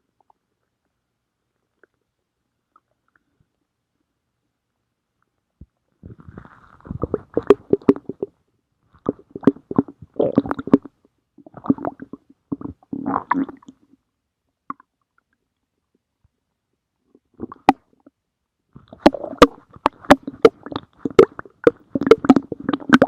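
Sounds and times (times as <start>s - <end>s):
stomach growling: 6.0s - 13.9s, 17.2s - 18.1s, 18.8s - 23.0s.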